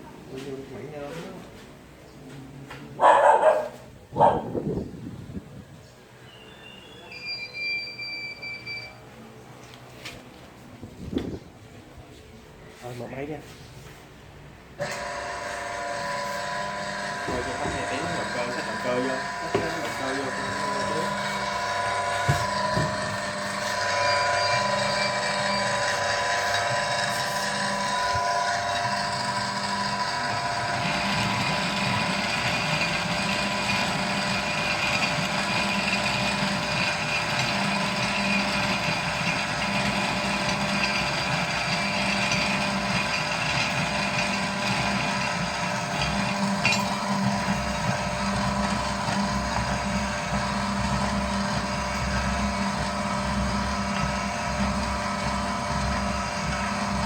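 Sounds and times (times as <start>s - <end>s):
pipe cutting machine humming: 14.7s - 57.0s.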